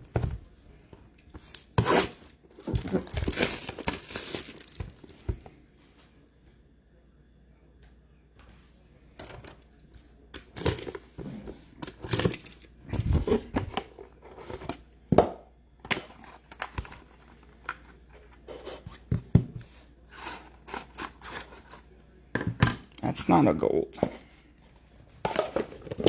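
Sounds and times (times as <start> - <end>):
card wrappers tearing and crinkling: 1.5 - 5.1.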